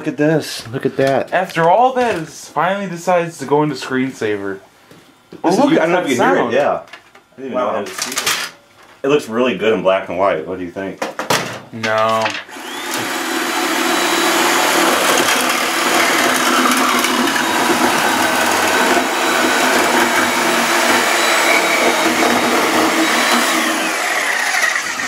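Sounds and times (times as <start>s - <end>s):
motor-driven machine whirring: 12.5s - 25.0s.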